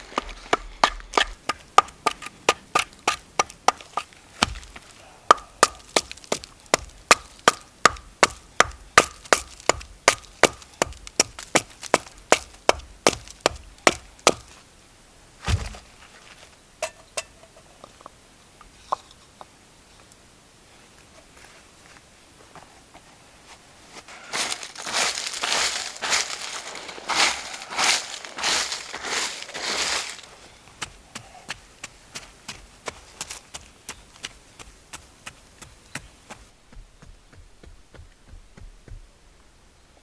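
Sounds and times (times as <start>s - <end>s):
heavy thump: 15.4s - 15.9s.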